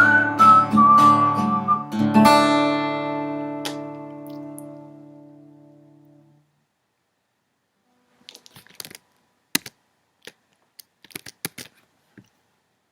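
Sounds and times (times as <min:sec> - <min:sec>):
acoustic guitar chord: 0:00.0 - 0:06.4.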